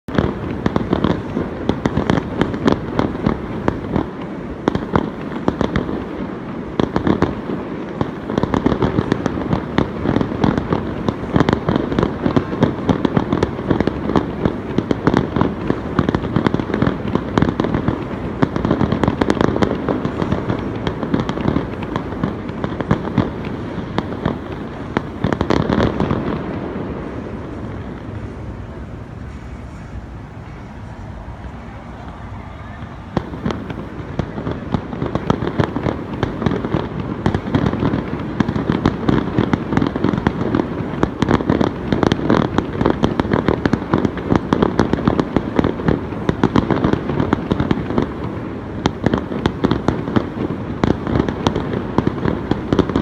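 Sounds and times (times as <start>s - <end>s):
fireworks banging: 0.1s - 53.0s.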